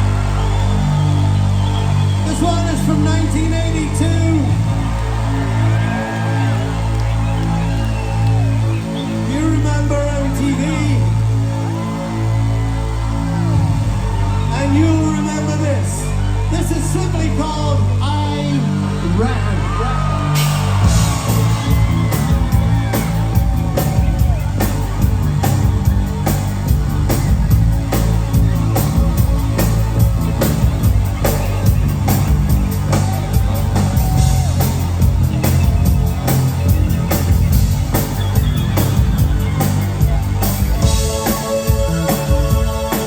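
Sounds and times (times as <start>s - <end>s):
bass: 0.0s - 43.0s
synthesizer: 0.0s - 43.0s
live band playing: 20.3s - 43.0s
drum beat: 20.4s - 43.0s.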